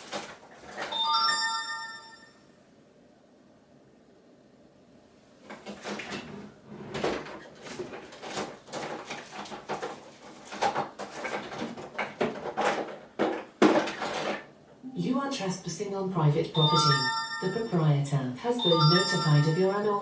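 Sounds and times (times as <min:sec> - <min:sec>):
knocks and clicks of handling: 0:07.2 - 0:14.5.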